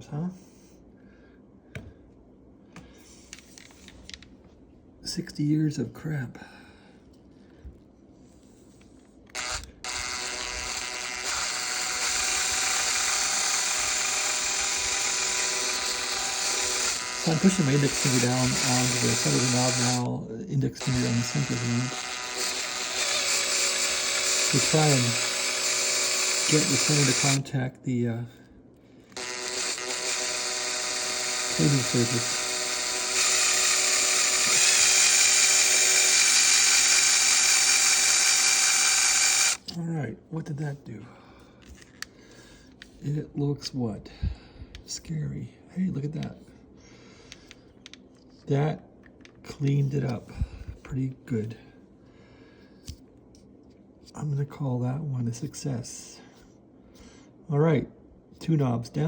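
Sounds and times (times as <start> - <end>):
electric drill whining: 9.3 - 20.1, 20.8 - 27.5, 29.1 - 39.7.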